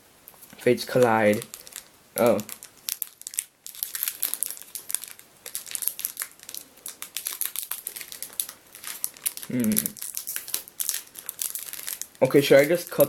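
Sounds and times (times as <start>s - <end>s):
foil wrapper crinkling: 0.3s - 13.0s.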